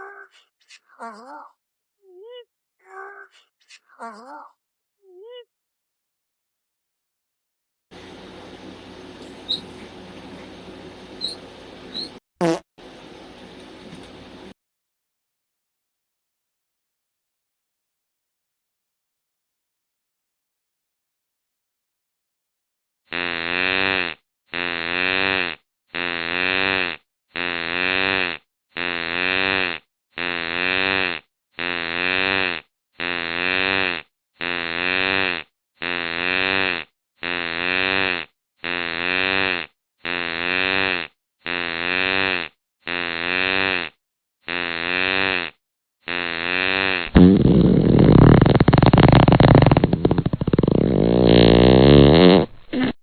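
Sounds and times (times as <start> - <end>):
fart sound buzz: 11.2 - 12.7, 23.1 - 53.0
rough noisy sound: 47.0 - 51.6.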